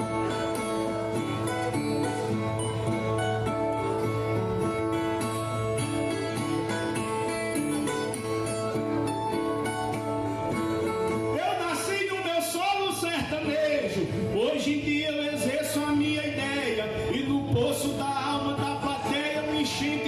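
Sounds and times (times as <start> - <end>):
viola strummed and plucked: 0.0 - 12.7.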